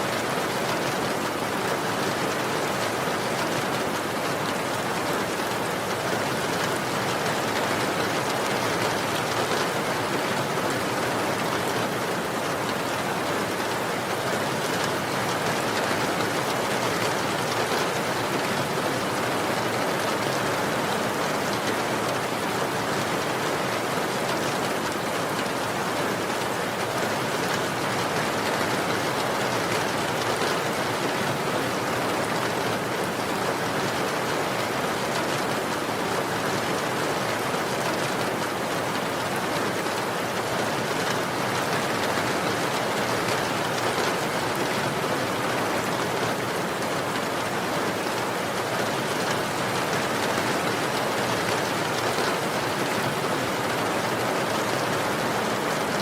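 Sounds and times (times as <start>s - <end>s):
rain pattering on a surface: 0.0s - 56.0s.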